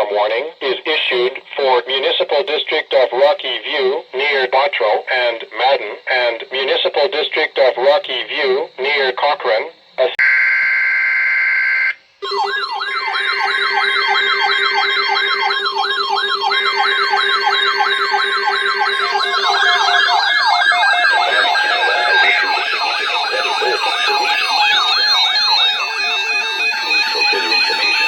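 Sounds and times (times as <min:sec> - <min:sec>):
electronic siren yelping: 0:10.2 - 0:28.0.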